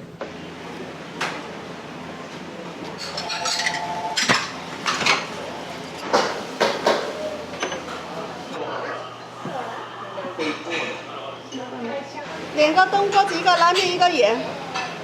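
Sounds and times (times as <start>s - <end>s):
dishes and cookware clattering: 3.0s - 8.1s.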